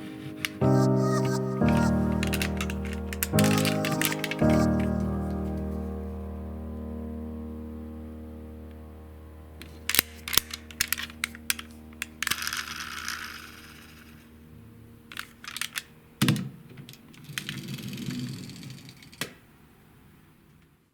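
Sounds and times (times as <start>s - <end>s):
plastic toy cars clicking: 1.7s - 5.0s, 10.0s - 14.2s, 15.1s - 19.5s
toy cars rustling and rattling: 12.2s - 14.2s, 15.1s - 15.9s, 16.8s - 19.3s.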